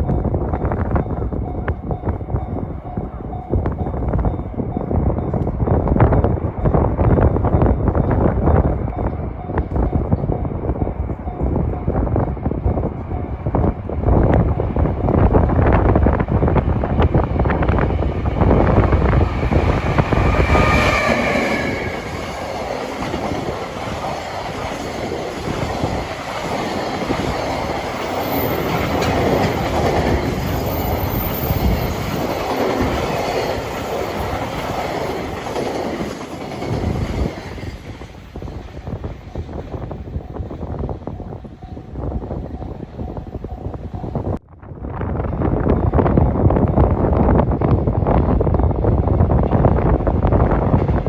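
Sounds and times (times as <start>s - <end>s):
freight train rumble: 0.0s - 51.0s
high wheel squeal: 18.4s - 23.5s
wagons clattering over rail joints: 21.9s - 38.0s.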